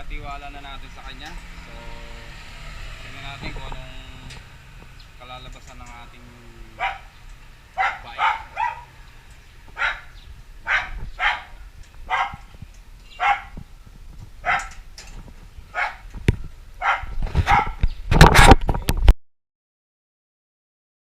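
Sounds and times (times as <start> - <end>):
dog barking: 6.8 - 7.2, 7.8 - 9.0, 9.8 - 12.5, 13.2 - 13.6, 14.4 - 14.8, 15.7 - 16.0, 16.8 - 17.8
clattering noise: 17.1 - 19.1.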